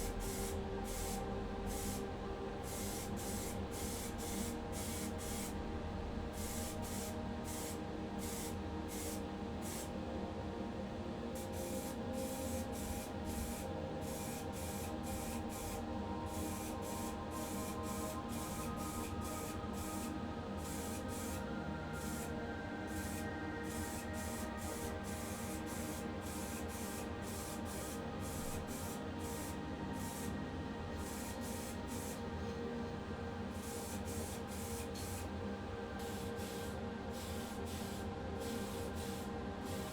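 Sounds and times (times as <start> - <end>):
spray paint hissing: 12.6 - 21.4.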